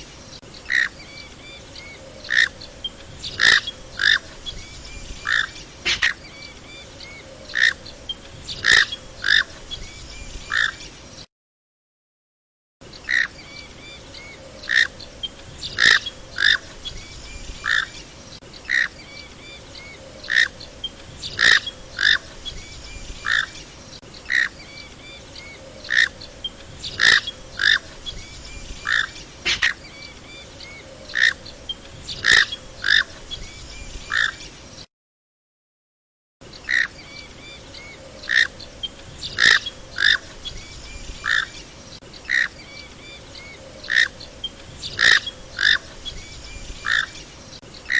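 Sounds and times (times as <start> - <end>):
duck calling: 3.4 - 4.3, 5.2 - 6.2, 15.7 - 16.7, 21.3 - 22.2, 27.0 - 27.9, 28.9 - 29.8, 44.9 - 45.9.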